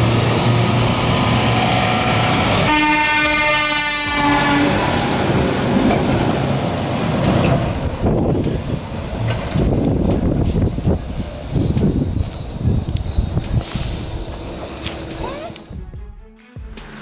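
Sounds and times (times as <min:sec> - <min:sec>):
truck air horn blast: 0:01.4 - 0:05.3.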